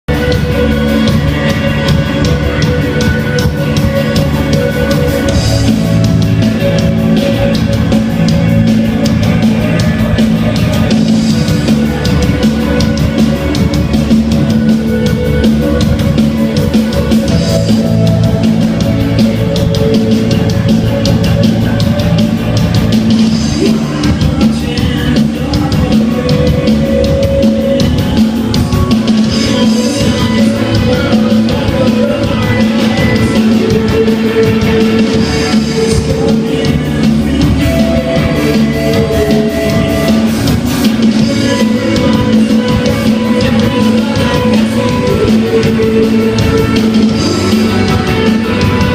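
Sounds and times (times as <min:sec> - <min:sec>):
rock band playing live: 0:00.0 - 0:48.9
drum kit beat: 0:00.1 - 0:48.9.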